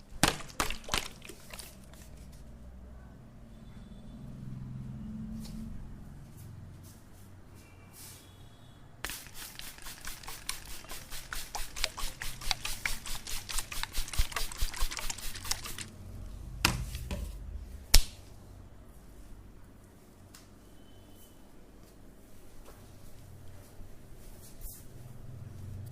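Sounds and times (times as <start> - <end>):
sharp slaps: 0.2 - 1.6, 17.8 - 18.3.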